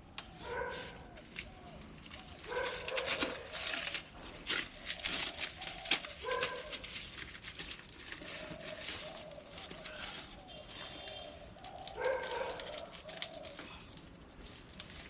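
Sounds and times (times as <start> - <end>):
rustling and clicking handling: 0.1 - 15.0.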